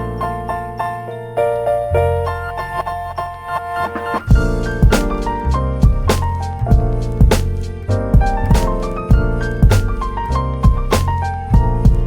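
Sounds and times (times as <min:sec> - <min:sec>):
upbeat piano and keyboard music: 0:00.0 - 0:12.0.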